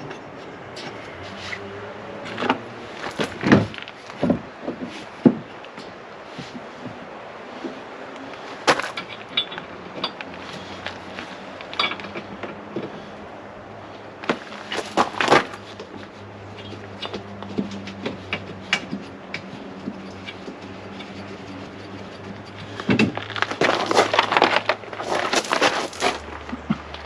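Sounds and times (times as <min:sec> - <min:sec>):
hand tools clicking against metal: 0:08.2 - 0:13.0, 0:14.5 - 0:27.0.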